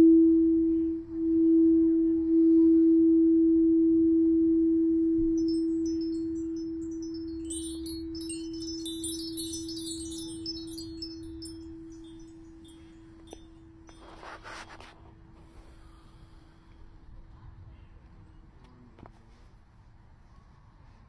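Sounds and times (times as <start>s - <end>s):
singing bowl ringing: 5.2s - 14.1s
chimes tinkling: 5.3s - 14.1s.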